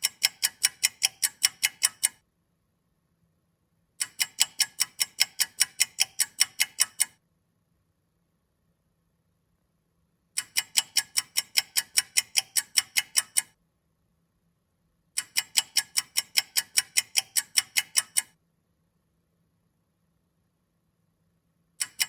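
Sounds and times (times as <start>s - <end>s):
clock ticking quickly: 0.0s - 2.2s, 4.0s - 7.2s, 10.4s - 13.6s, 15.2s - 18.3s, 21.8s - 22.0s.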